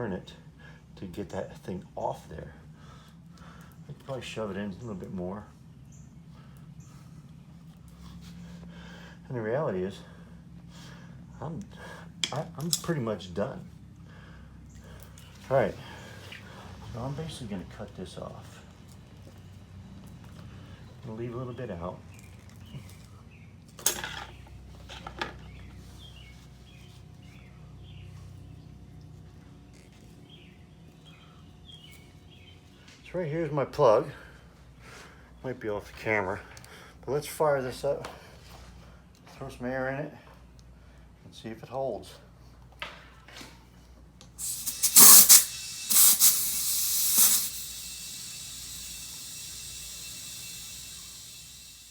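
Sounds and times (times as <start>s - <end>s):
steady low hum: 0.0s - 22.1s, 44.2s - 51.9s
compressed air hissing: 44.4s - 51.9s.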